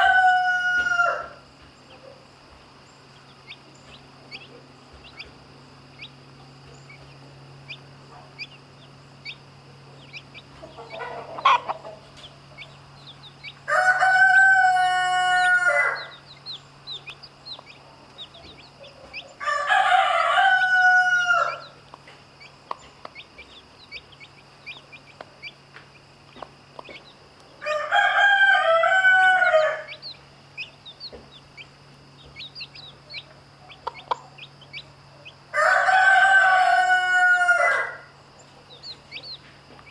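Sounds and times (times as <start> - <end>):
rooster crowing: 0.0 - 1.5, 10.6 - 12.0, 13.6 - 16.5, 18.6 - 21.8, 27.6 - 30.2, 35.5 - 38.2.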